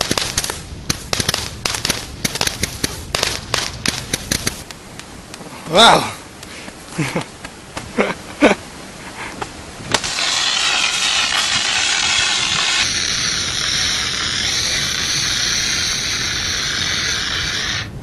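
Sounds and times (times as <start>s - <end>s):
sharp crack: 0.0s - 5.4s, 9.9s - 17.9s
pyrotechnics hissing: 9.9s - 18.0s.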